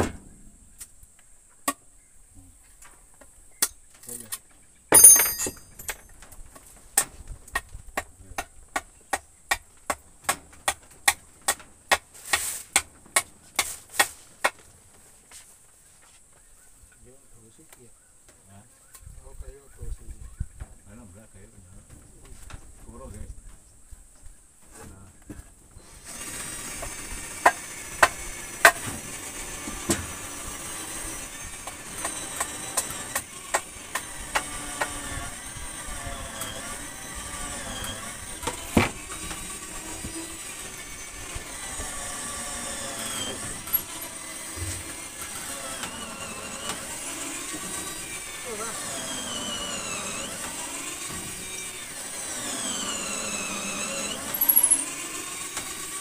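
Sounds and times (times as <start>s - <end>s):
tool striking wood: 4.9s - 6.0s, 7.0s - 14.6s, 26.8s - 29.0s, 29.6s - 30.2s, 31.6s - 35.0s, 38.4s - 39.0s, 43.1s - 46.0s
hammer striking wood: 26.8s - 29.0s, 31.6s - 34.9s.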